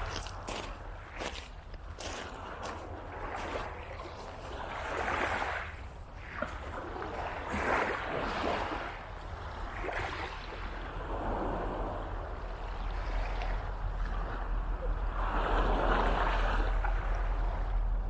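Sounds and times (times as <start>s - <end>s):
steady low rumble: 0.0s - 4.8s, 8.9s - 18.0s
small waves breaking on beach: 0.0s - 17.9s.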